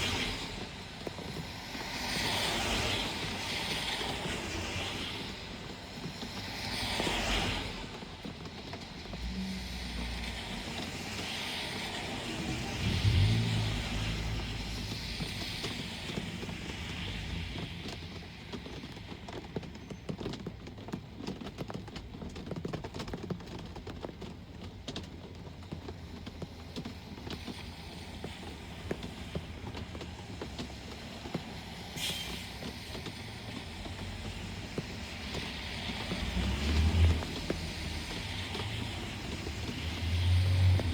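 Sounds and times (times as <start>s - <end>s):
rain falling: 0.0s - 40.9s
raindrops ticking: 0.0s - 40.9s
road traffic: 0.0s - 40.9s
vehicle passing: 9.1s - 17.7s, 27.8s - 40.9s
brief high hiss: 32.0s - 32.6s.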